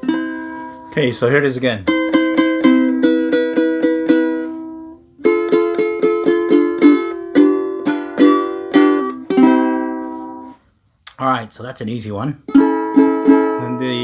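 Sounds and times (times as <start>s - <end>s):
ukulele strumming chords: 0.0s - 10.6s, 12.4s - 14.0s.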